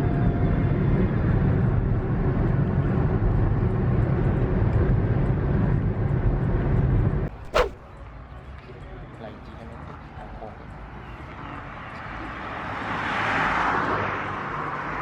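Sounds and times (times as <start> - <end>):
brief sharp high sound: 7.5 - 7.8.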